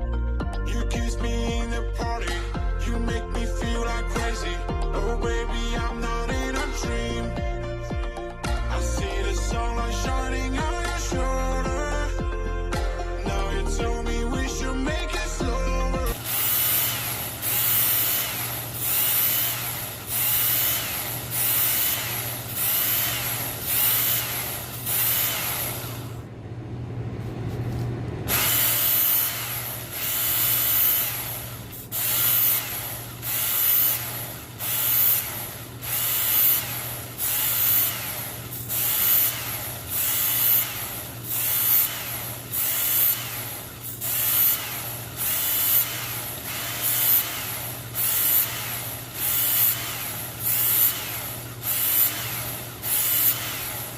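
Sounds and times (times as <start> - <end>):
electric knife sharpener running: 16.1 - 26.2, 28.3 - 53.9
knife grinding on sharpener: 16.1 - 26.2, 28.3 - 53.9.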